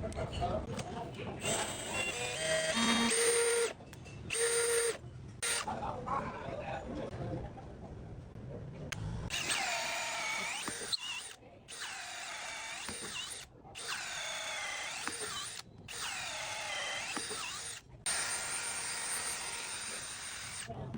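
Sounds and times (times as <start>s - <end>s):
cordless drill motor whining: 1.4s - 5.7s, 9.3s - 20.7s.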